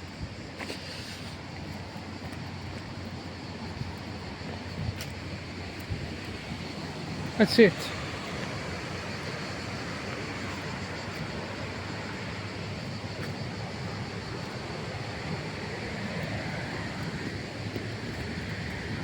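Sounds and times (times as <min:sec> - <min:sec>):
waterfall rushing: 0:06.2 - 0:12.8.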